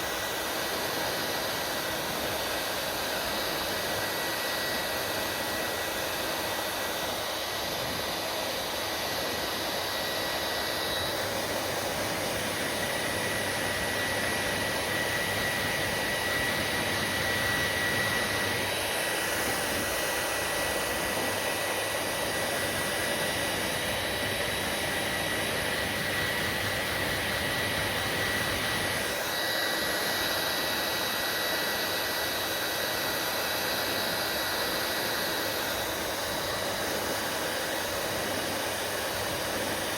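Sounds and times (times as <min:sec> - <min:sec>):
hair dryer running: 0:00.0 - 0:39.9.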